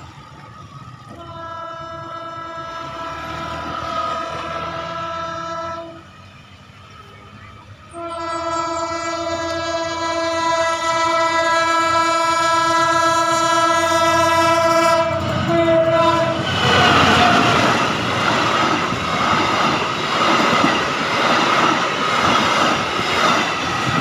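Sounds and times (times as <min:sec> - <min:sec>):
train wheels on rails: 0:00.0 - 0:24.0
train horn blast: 0:01.1 - 0:06.2, 0:07.9 - 0:17.8.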